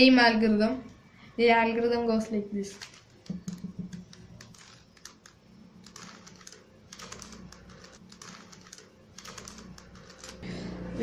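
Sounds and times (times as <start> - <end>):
plastic cube clicking when twisted: 2.7 - 10.4.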